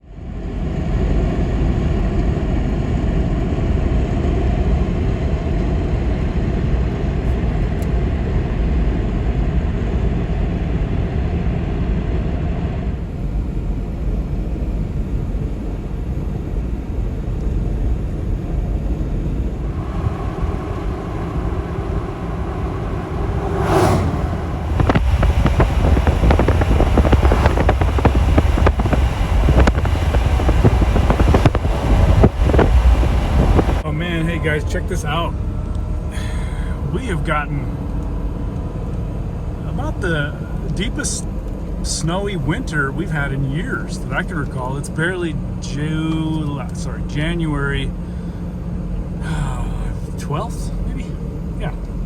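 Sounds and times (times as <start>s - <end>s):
vehicle engine running: 17.0s - 36.7s
sweep rising and falling in pitch: 19.5s - 27.6s.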